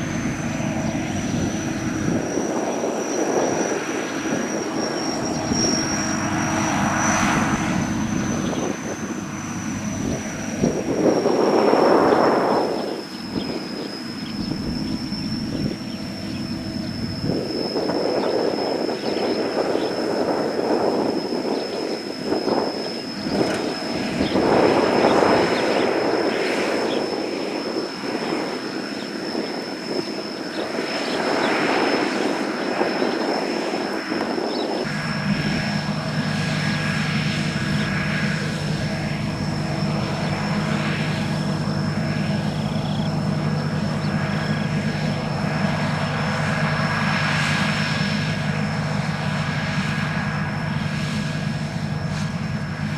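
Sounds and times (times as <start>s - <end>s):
combine harvester running: 0.0s - 17.6s, 34.9s - 52.9s.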